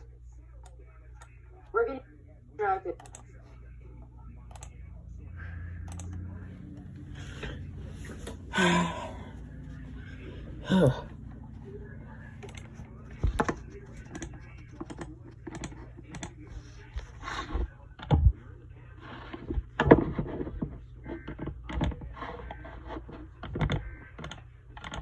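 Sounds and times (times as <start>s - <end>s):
steady low hum: 0.0s - 21.3s
typing on computer keyboard: 3.0s - 3.3s, 4.5s - 4.7s, 5.9s - 6.2s, 13.4s - 16.4s, 23.4s - 25.0s.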